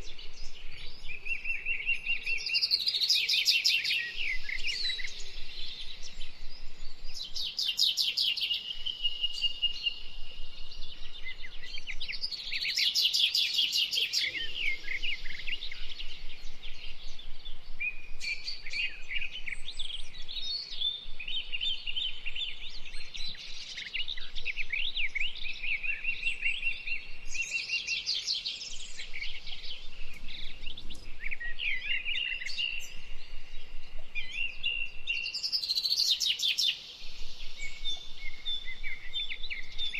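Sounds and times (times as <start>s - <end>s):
bird singing trills and whistles: 0.0s - 39.9s.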